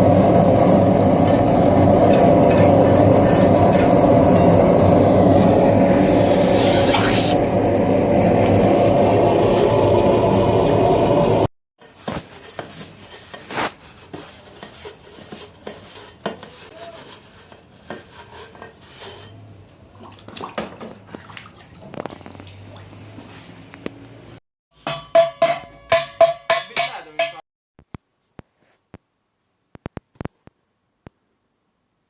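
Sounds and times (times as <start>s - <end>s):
loud steady rushing noise: 0.0s - 11.5s.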